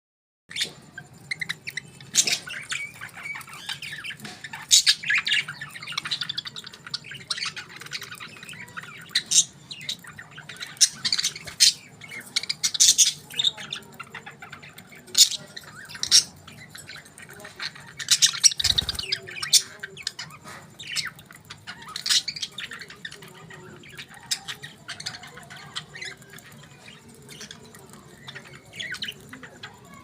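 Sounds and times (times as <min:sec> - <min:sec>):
budgerigars chirping: 0:00.5 - 0:30.0
budgerigars squawking: 0:18.2 - 0:19.4.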